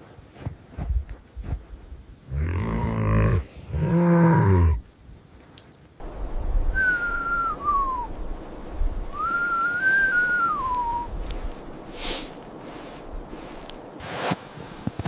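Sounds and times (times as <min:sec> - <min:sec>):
blizzard wind rushing: 0:06.0 - 0:15.0
hissing wind gust: 0:06.0 - 0:15.0
wind whistling: 0:06.0 - 0:15.0.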